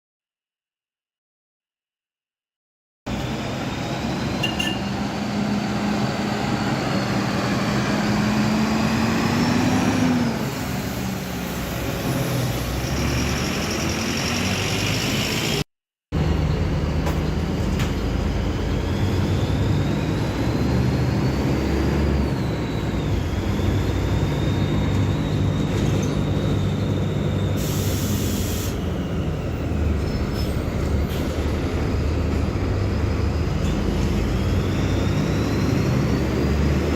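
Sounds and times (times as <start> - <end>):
bus diesel engine running: 3.1 - 36.9
short air hisses: 27.6 - 28.8.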